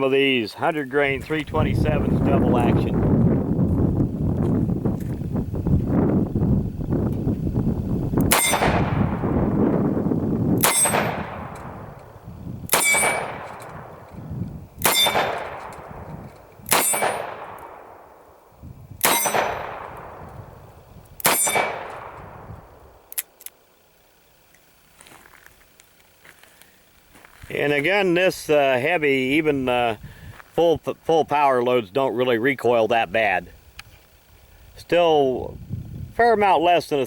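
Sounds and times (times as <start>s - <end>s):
revolver shots: 8.2s - 9.4s, 10.5s - 12.0s, 12.7s - 14.2s, 14.8s - 16.0s, 16.6s - 17.9s, 19.0s - 20.4s, 21.2s - 22.6s
metallic ring: 8.3s - 8.8s, 10.6s - 11.3s, 12.7s - 13.8s, 14.8s - 15.5s, 16.7s - 17.3s, 19.0s - 19.7s, 21.2s - 21.8s.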